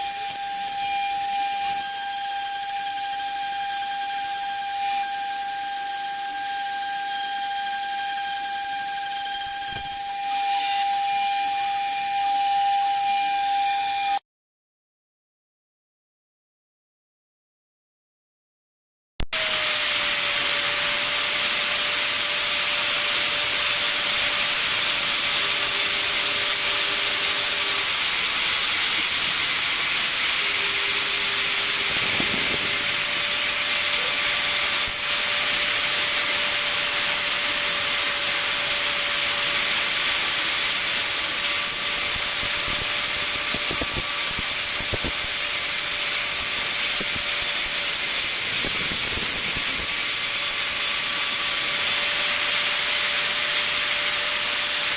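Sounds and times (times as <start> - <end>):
router cutting foam hiss: 0.0 - 14.2, 19.4 - 54.9
spindle high whine: 23.7 - 51.2.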